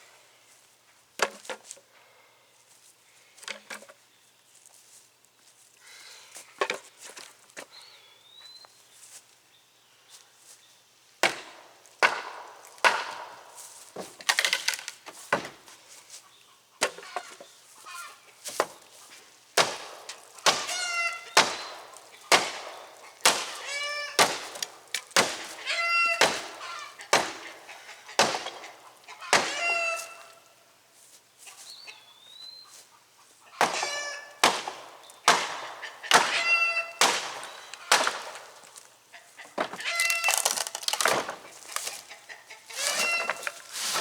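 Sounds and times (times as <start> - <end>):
short wood squeals: 36.1 - 38.0, 39.6 - 42.0, 42.7 - 44.0.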